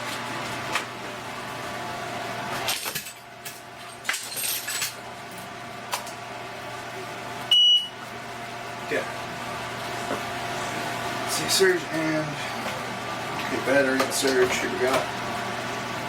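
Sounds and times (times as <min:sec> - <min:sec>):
steady electrical hum: 0:00.0 - 0:16.0.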